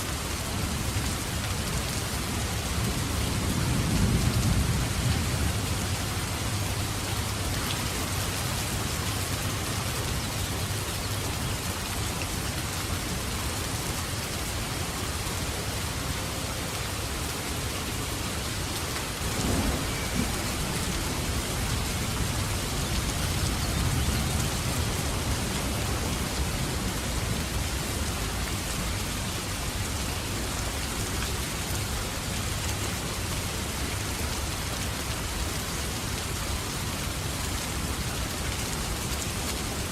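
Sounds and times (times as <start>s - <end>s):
heavy rain: 0.0s - 39.9s
thunder rumbling: 19.1s - 27.5s.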